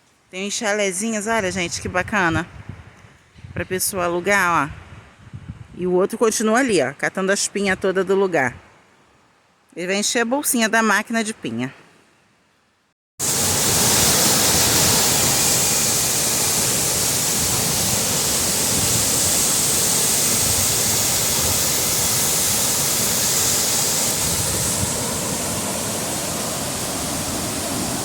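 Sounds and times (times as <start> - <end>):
river water rushing: 13.2 - 28.0.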